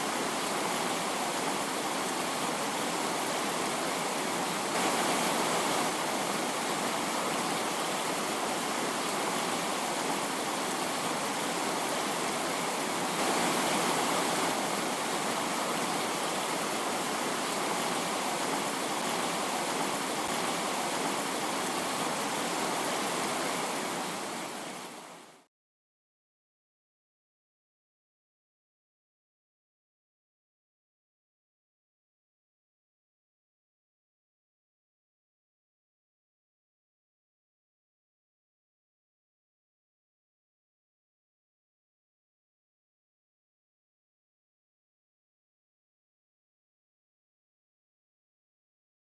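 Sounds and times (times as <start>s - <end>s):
steady hiss: 0.0s - 25.5s.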